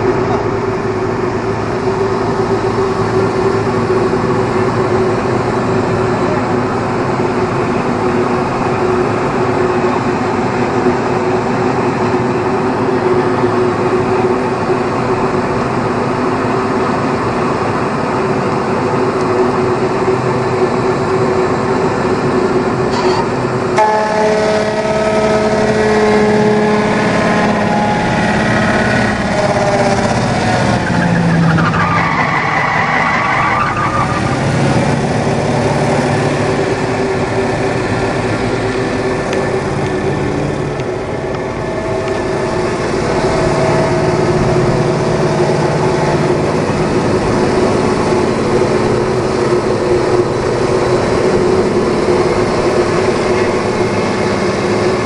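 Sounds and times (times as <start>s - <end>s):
sawdust machine humming: 34.3s - 55.0s.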